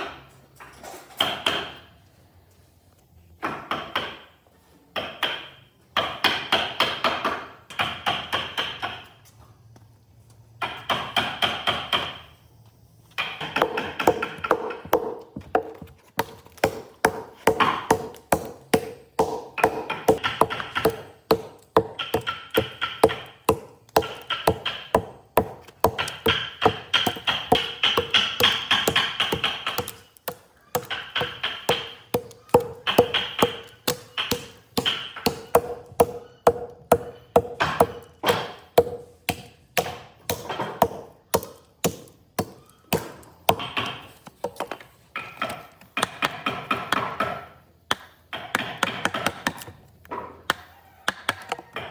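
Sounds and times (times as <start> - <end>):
rapid hammering on wood: 5.0 - 9.0, 13.2 - 49.7.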